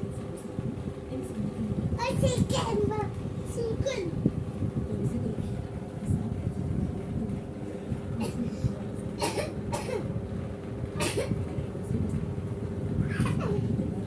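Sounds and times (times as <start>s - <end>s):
steady low rumble: 0.0s - 14.0s
child coughing: 8.2s - 8.6s, 9.2s - 10.1s, 11.0s - 11.4s, 13.0s - 13.7s.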